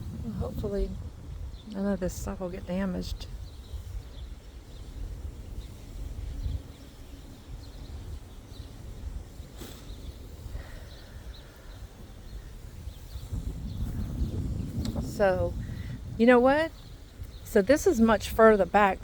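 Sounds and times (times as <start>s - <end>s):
low rumble: 0.0s - 3.5s.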